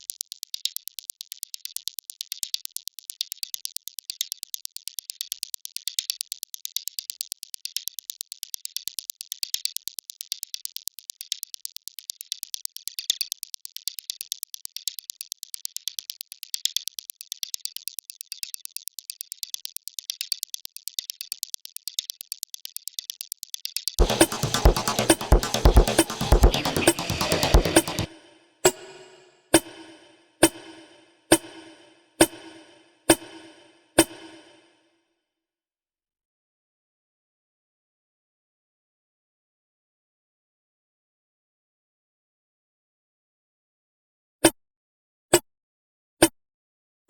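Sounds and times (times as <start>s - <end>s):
electronic percussion ticks: 0.0s - 34.8s.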